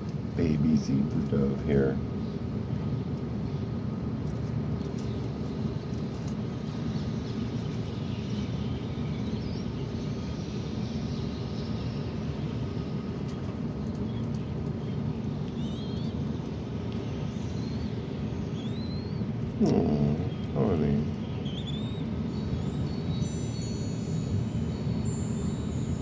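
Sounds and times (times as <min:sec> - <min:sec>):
baby dove peeping: 0:04.3 - 0:26.0
steady low rumble: 0:19.2 - 0:26.0.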